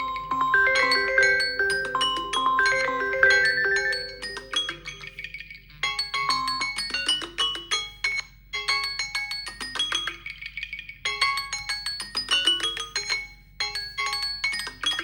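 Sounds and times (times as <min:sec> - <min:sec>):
phone alert tone: 0:00.0 - 0:05.1, 0:06.1 - 0:06.8.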